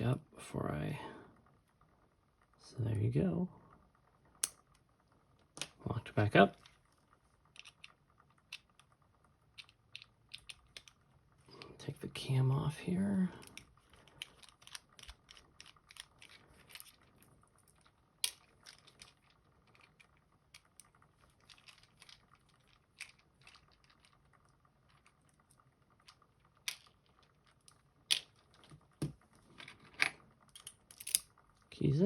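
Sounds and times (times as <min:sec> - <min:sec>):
metal lock parts clicking: 0:29.9 - 0:31.3.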